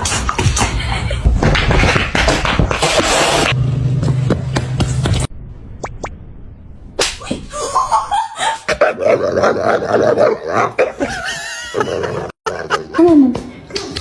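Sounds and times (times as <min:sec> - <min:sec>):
sharp smacks: 0:07.0 - 0:07.4
people laughing: 0:07.5 - 0:08.8, 0:10.9 - 0:13.4.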